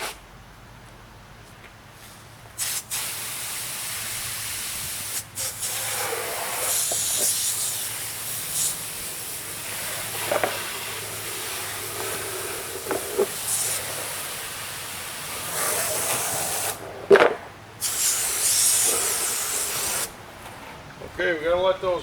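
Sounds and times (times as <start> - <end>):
water spraying from hose nozzle: 2.6 - 16.8, 17.8 - 20.2.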